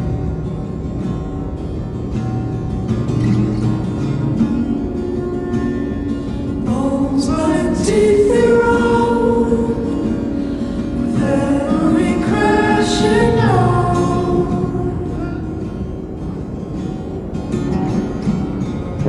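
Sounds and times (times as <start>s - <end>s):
several voices singing together: 6.6s - 15.6s.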